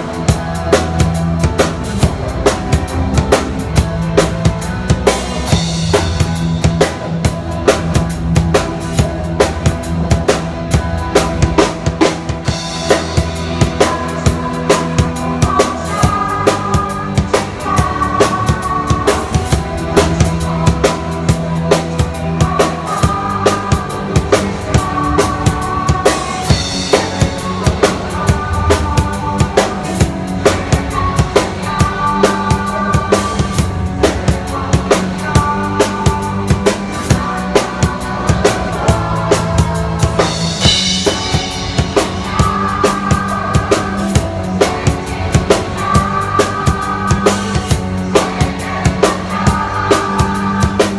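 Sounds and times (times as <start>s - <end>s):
band music: 0.0s - 50.9s
drum kit beat: 0.0s - 50.9s.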